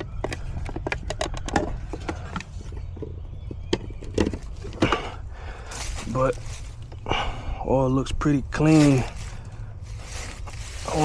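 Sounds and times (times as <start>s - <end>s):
vacuum pump clicks and knocks: 0.0s - 5.1s.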